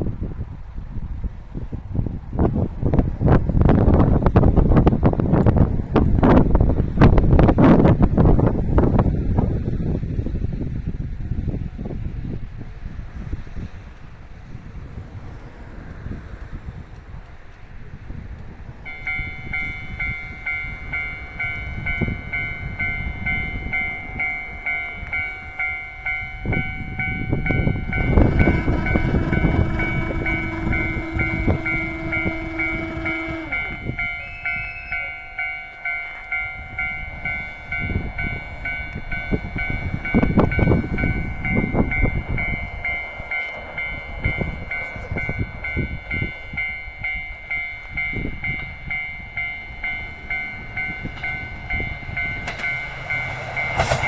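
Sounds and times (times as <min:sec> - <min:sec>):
diesel railcar rumble: 0:00.0 - 0:54.0
train wheel clatter: 0:01.9 - 0:54.0
level crossing alarm ringing: 0:18.9 - 0:54.0.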